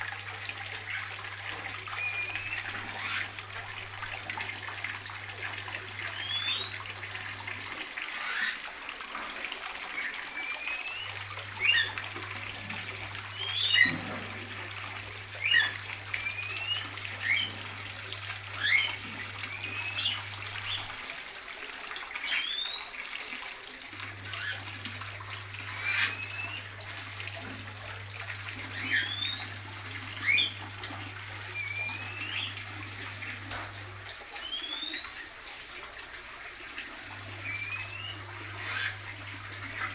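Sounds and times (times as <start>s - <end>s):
birds chirping: 2.0s - 3.3s, 6.1s - 6.9s, 13.3s - 14.4s, 28.7s - 30.6s, 37.4s - 39.0s.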